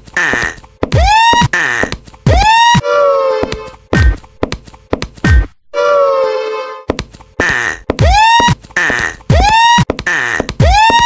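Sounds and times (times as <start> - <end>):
cartoon upward swoop: 2.3 - 3.8, 5.8 - 6.6
held tone sagging in pitch: 2.4 - 3.8, 5.7 - 6.8.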